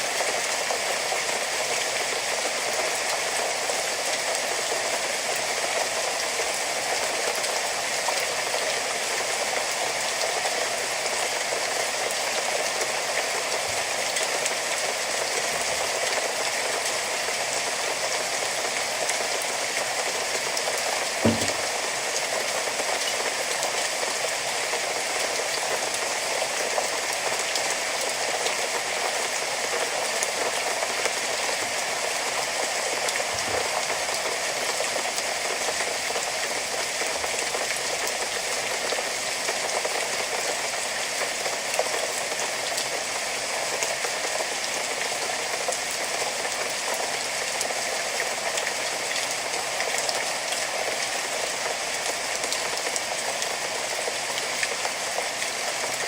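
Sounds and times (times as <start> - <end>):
steady rain falling: 0.0 - 56.0
short dull thump: 21.2 - 21.7.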